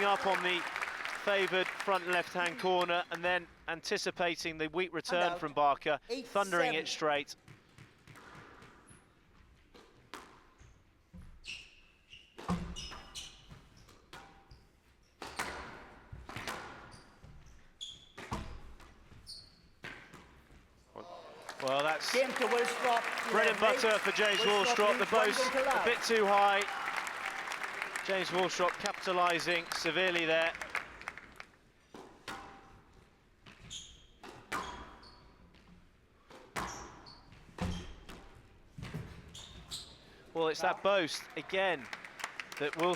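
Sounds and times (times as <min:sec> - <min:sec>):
shoes squeaking on court floor: 0:07.5 - 0:15.5, 0:16.7 - 0:20.7, 0:33.4 - 0:40.2.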